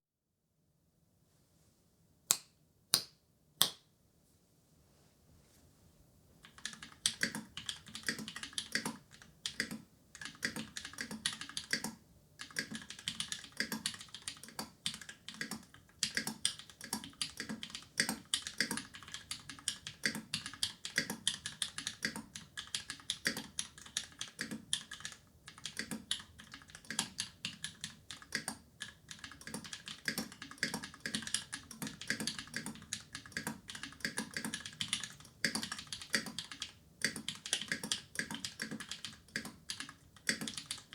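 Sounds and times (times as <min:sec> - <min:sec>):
typing on mechanical keyboard: 0:06.4 - 0:40.9.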